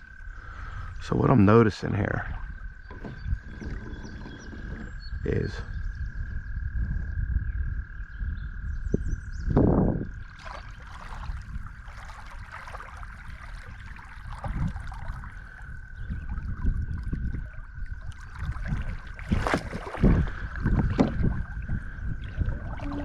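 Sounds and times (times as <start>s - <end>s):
wind rumbling on microphone: 0.0s - 23.0s
knocks and splashes: 2.3s - 5.0s, 9.5s - 23.0s
river water rushing and gurgling: 10.3s - 15.7s, 17.9s - 23.0s.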